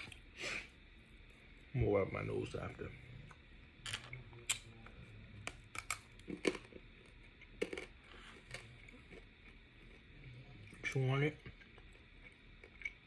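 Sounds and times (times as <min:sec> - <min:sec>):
chewing mouth clicks and smacks: 0:11.4 - 0:13.0.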